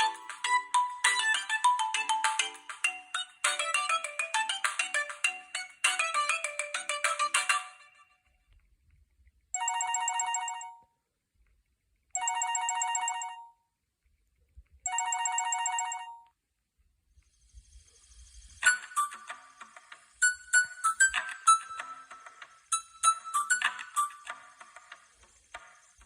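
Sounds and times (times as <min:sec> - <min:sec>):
telephone bell ringtone trilling: 0:09.6 - 0:10.9, 0:12.2 - 0:13.6, 0:14.9 - 0:16.3.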